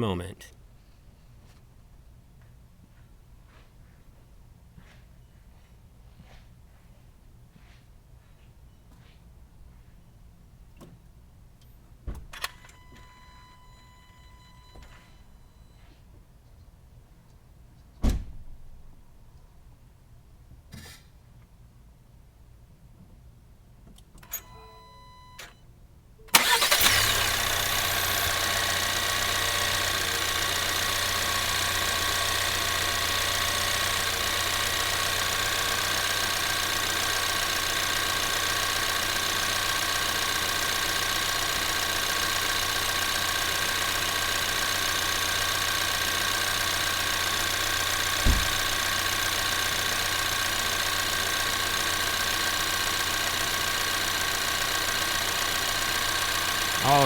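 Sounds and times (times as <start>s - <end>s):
car engine starting and idling: 26.2s - 57.0s
low thump: 48.2s - 48.6s.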